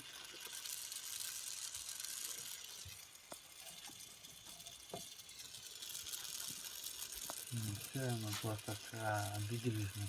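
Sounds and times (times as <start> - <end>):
gas torch flame hissing: 0.0 - 10.0.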